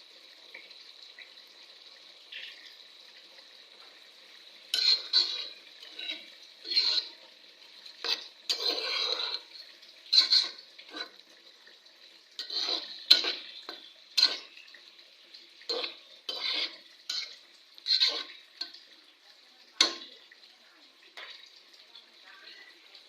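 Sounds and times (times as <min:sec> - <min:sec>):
spoon scraping cooking pot: 0:04.7 - 0:07.3, 0:07.9 - 0:11.3, 0:12.3 - 0:14.7, 0:15.6 - 0:18.9.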